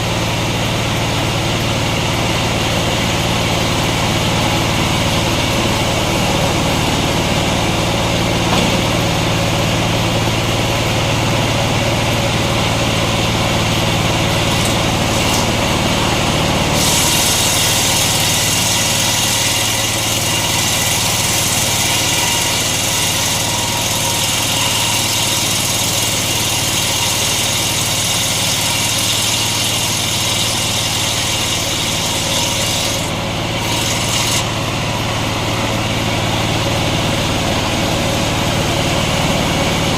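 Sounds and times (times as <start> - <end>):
sawmill engine humming: 0.0 - 39.9
saw blade cutting log: 13.4 - 36.2.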